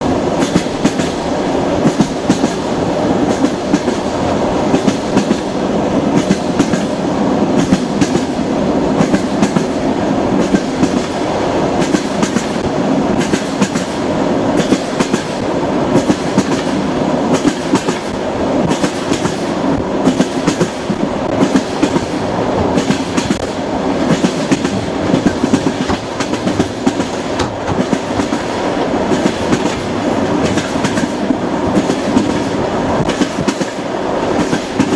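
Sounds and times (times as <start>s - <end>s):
train rumble: 0.0s - 34.9s
train wheels clacking over rail joints: 0.4s - 1.2s, 1.8s - 4.1s, 4.7s - 7.0s, 7.6s - 8.4s, 9.0s - 9.8s, 10.4s - 11.2s, 11.8s - 14.0s, 14.6s - 34.9s.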